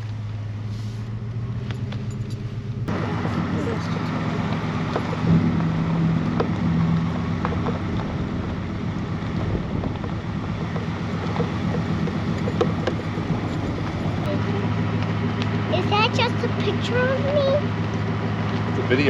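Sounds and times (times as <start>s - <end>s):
tyre and road rumble: 0.0s - 19.0s
vehicle engine drone: 0.0s - 19.0s
light rattles and ticks: 9.2s - 14.3s.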